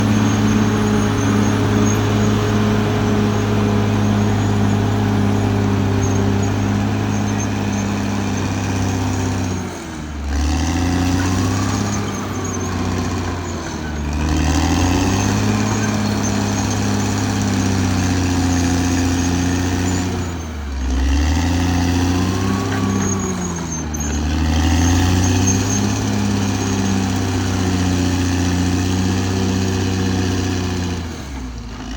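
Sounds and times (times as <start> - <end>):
bulldozer diesel engine running: 0.0 - 31.9.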